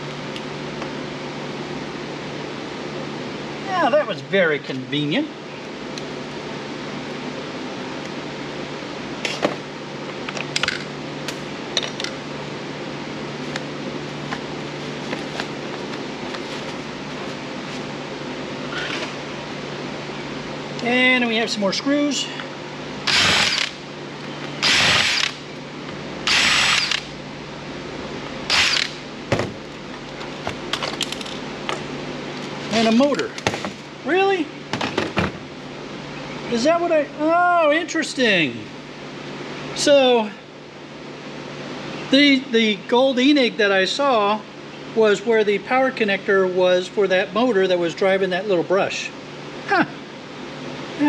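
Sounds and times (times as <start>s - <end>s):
steady low hum: 0.0s - 51.0s
power screwdriver whirring: 23.1s - 23.8s, 24.6s - 25.4s, 26.3s - 27.1s, 28.5s - 29.0s.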